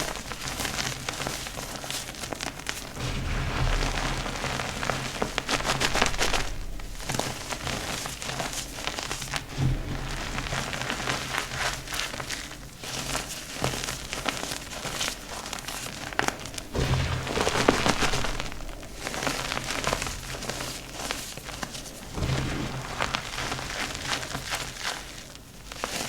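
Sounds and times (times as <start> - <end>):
chalk crunching: 14.0 - 26.0.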